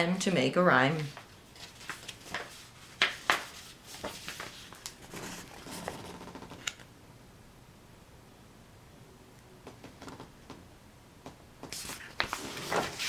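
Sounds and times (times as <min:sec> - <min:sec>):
book pages turning: 0:01.1 - 0:06.8, 0:11.7 - 0:13.0.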